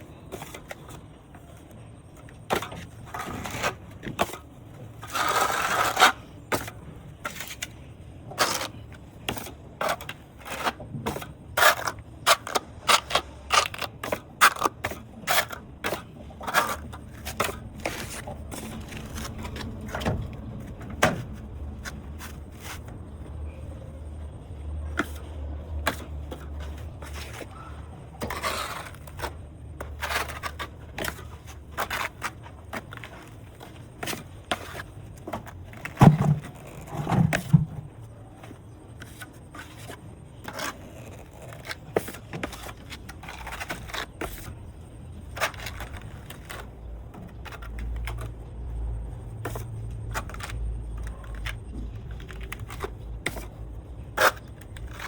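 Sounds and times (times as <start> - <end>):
hand tools scraping concrete: 5.0 - 6.7, 25.9 - 34.9.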